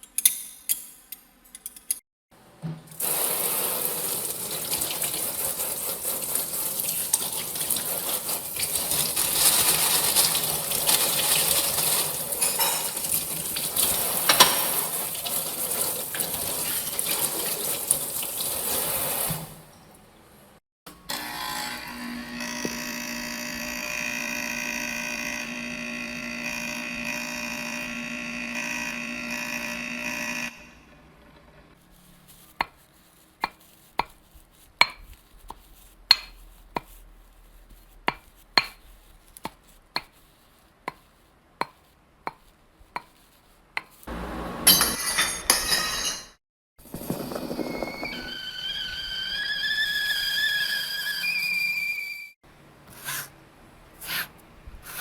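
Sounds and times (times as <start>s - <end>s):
appliance humming: 20.9s - 31.8s, 44.1s - 45.4s.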